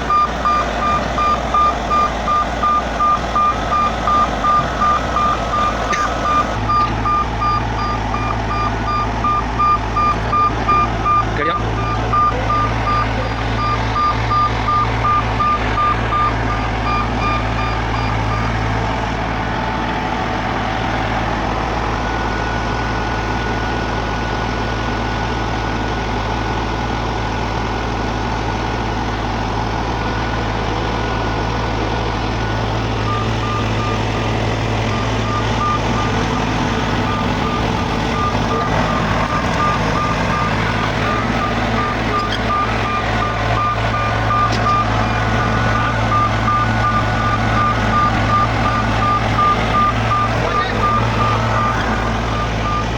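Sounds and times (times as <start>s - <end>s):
reversing alarm beeping: 0.0s - 18.8s, 32.4s - 52.9s
road milling machine running: 0.0s - 52.9s.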